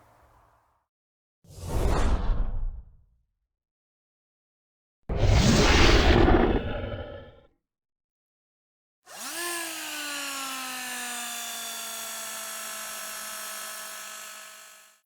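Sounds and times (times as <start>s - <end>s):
motor whirring: 9.1s - 15.0s.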